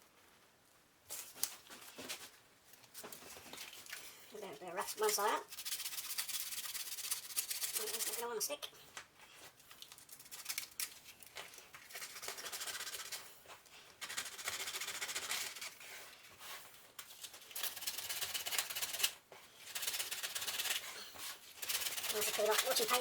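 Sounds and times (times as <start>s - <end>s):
hand sanding small parts: 4.9s - 8.4s, 9.9s - 23.0s.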